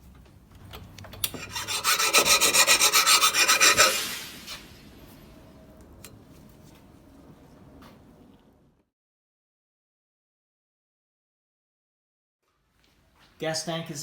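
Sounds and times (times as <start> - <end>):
metal hand tool rasping: 1.4 - 4.2.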